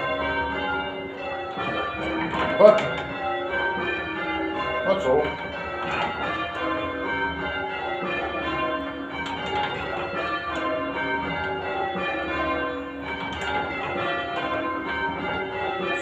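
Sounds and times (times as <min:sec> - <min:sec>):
church bells ringing: 0:00.0 - 0:16.0.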